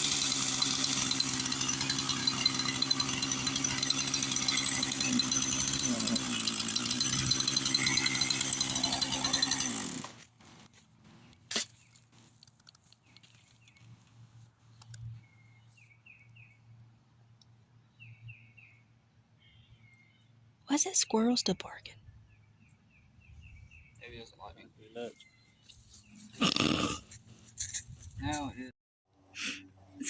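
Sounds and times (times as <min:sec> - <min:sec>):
chainsaw running: 0:00.0 - 0:10.8.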